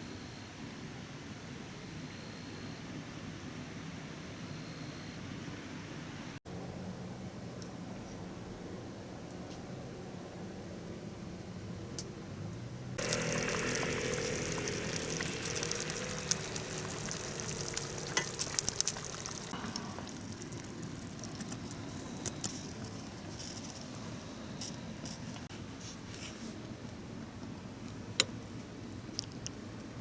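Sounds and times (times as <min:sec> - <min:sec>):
food sizzling in a pan: 0:13.0 - 0:25.4
sharp crackles: 0:13.0 - 0:25.5.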